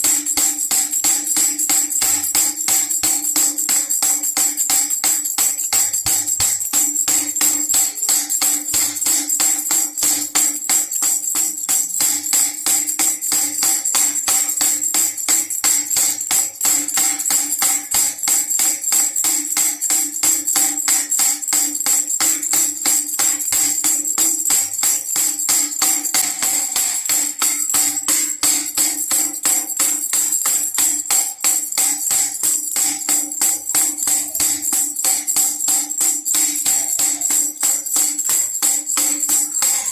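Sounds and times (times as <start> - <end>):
baby rattle shaken: 0.0 - 39.9.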